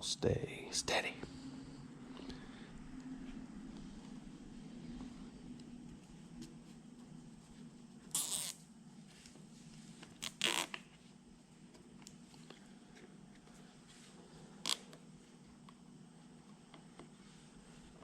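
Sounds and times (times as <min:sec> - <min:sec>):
low steady hum: 0:00.0 - 0:18.0
cable tie zipping: 0:08.1 - 0:08.6, 0:10.2 - 0:10.8.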